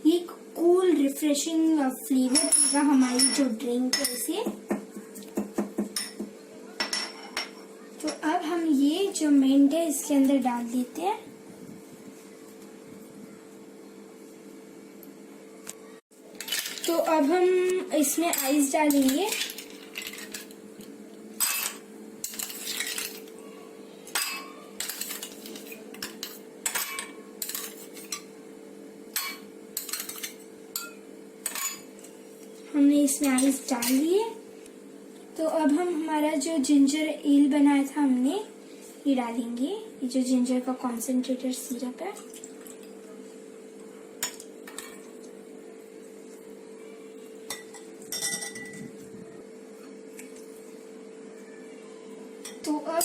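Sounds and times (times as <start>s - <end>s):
ice cubes clinking in glasses: 16.4s - 17.2s, 18.4s - 20.5s.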